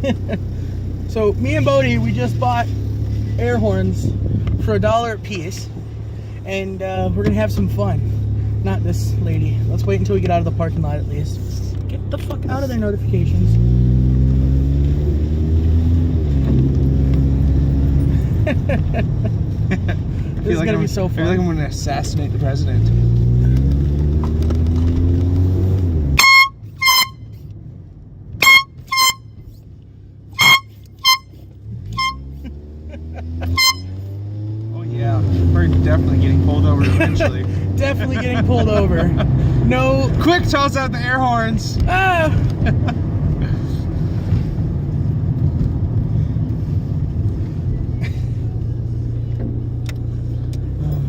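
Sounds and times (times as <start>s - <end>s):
car engine revving: 0.0s - 51.0s
road noise: 0.0s - 51.0s
handheld air horn blasts: 26.2s - 27.4s, 28.4s - 29.5s, 30.3s - 32.4s, 33.4s - 34.0s.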